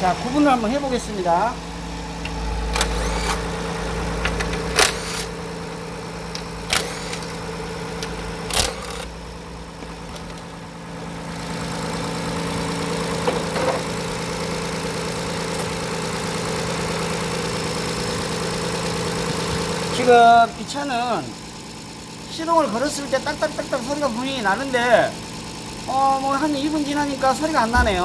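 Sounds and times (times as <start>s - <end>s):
car engine idling: 0.0s - 28.0s
faint engine ticking: 13.8s - 28.0s.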